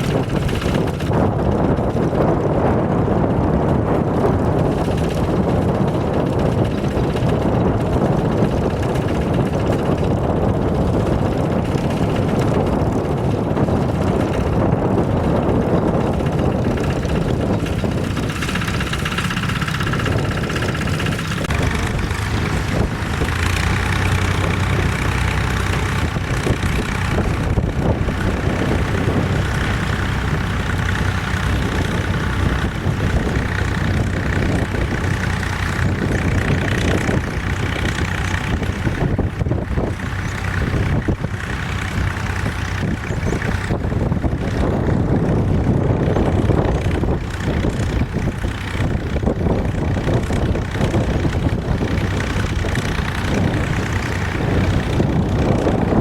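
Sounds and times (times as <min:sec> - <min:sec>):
tractor engine running: 0:00.0 - 0:56.0.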